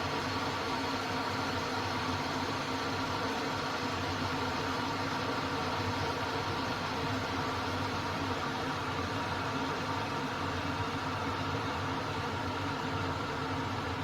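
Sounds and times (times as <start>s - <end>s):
electric kettle heating water: 0.0s - 14.0s.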